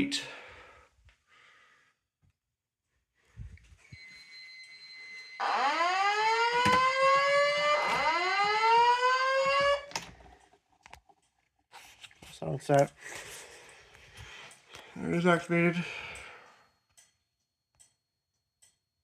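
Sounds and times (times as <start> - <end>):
fire alarm whoop tone: 3.8 - 9.9
faint high beep: 3.9 - 5.4.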